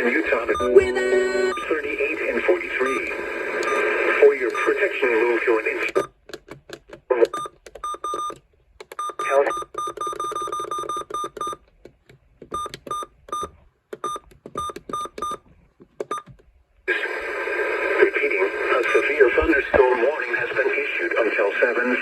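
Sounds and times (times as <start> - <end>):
short electronic beeps: 0.5 - 1.8.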